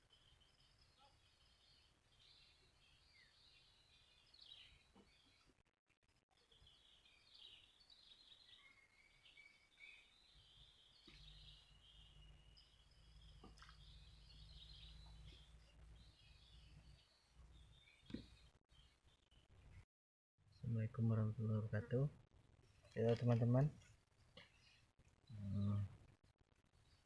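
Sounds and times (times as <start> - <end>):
birds twittering: 0.0 - 5.5, 6.4 - 19.8, 24.5 - 26.0.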